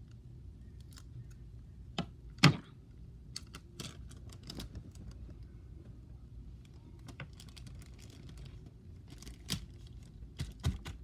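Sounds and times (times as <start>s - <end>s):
tape and plastic crinkling: 6.6s - 11.0s.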